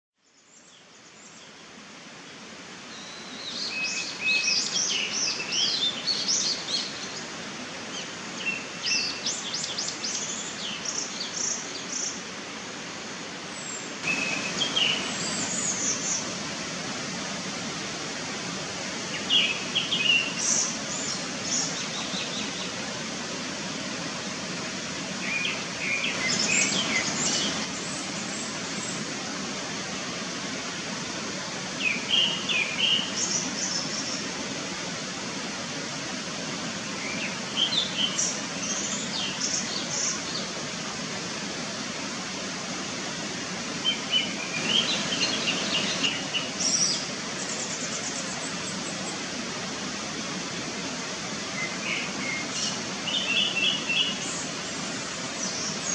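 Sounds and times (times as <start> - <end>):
steady background hiss: 0.2 - 55.9
thrush whistling song: 13.6 - 16.6, 19.0 - 22.8, 25.2 - 29.1, 31.8 - 34.2, 43.8 - 49.2, 51.5 - 55.9.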